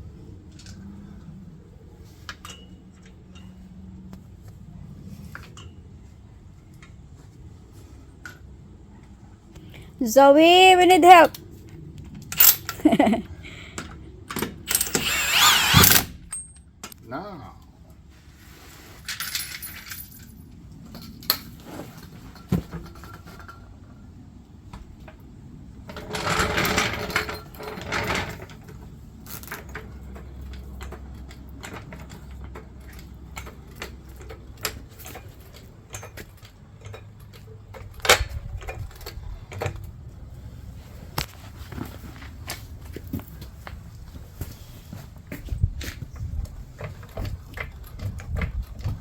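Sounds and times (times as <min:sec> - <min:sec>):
metal clicks and clanks: 0:25.9 - 0:40.0.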